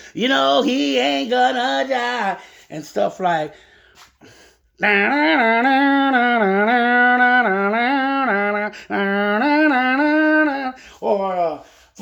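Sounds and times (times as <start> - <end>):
man humming a tune: 4.8 - 11.3.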